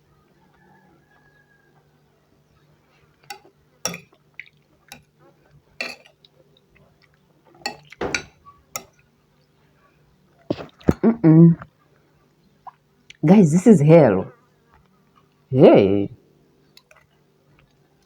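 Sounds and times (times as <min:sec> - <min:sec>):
cutlery clinking on plate: 0:03.2 - 0:04.2, 0:05.8 - 0:06.2, 0:07.7 - 0:09.0.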